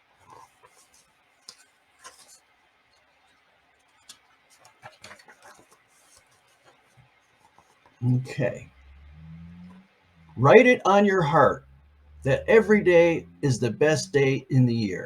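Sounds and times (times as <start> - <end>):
book page turning: 0.2 - 2.5, 3.8 - 8.0.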